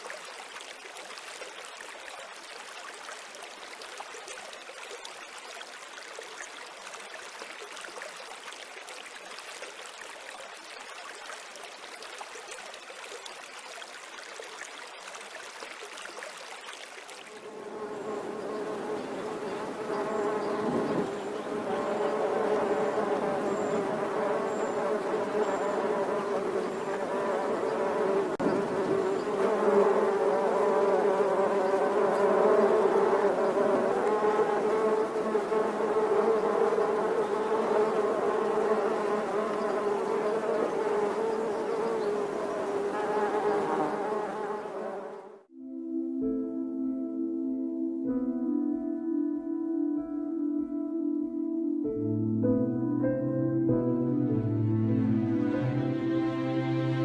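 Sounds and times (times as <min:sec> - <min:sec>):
insects buzzing: 0:17.4 - 0:45.5.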